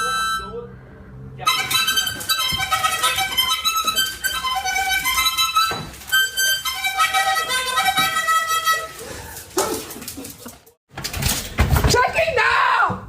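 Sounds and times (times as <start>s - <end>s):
harmonica playing a quick tune: 0.0s - 0.7s, 1.5s - 9.0s.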